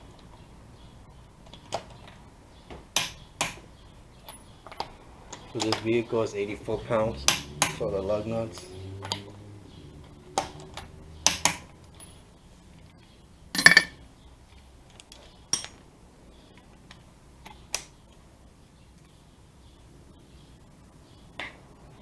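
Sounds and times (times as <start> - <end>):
metal clatter: 13.6 - 14.0.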